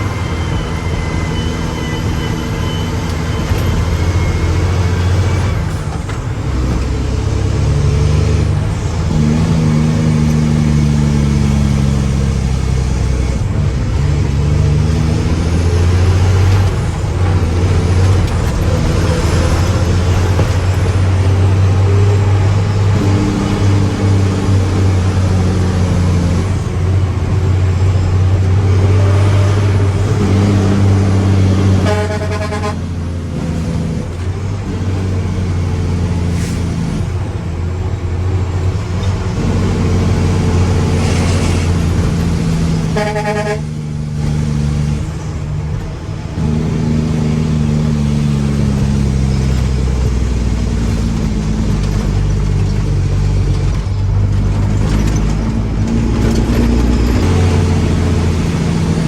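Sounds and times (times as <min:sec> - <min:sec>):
truck diesel engine running: 0:00.0 - 0:59.0
truck horn toots: 0:28.9 - 0:33.4, 0:40.6 - 0:44.2.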